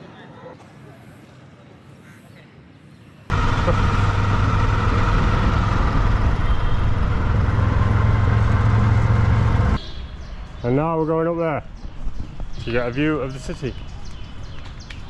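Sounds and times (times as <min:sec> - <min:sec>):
auto-rickshaw engine running: 0:03.3 - 0:09.8
road noise: 0:03.3 - 0:12.4.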